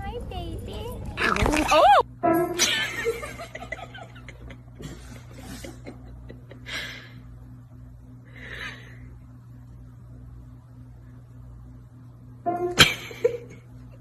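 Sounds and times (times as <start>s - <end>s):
person laughing in breathy snickers: 3.4s - 7.1s.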